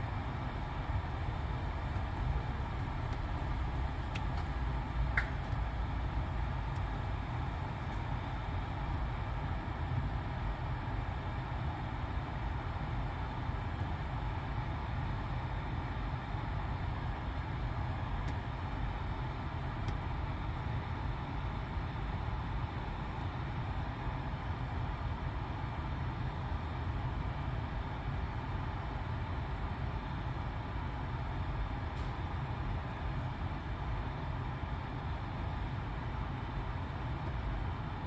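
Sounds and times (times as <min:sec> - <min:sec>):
car cabin rumble and hiss: 0:00.2 - 0:11.6, 0:15.5 - 0:24.0.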